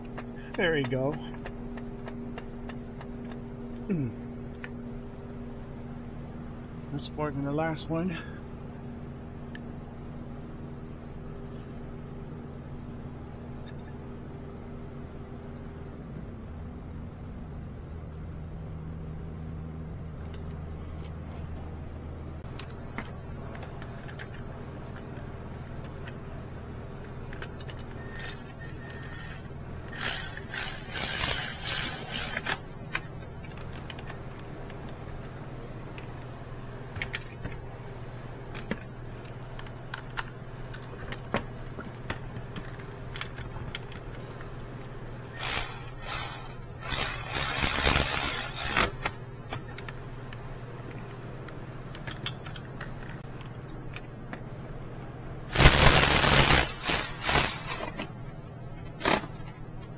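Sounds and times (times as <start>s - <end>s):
steady low hum: 0.0s - 59.9s
metal tools rattling and scraping: 27.5s - 32.6s, 45.4s - 49.0s, 55.6s - 58.0s.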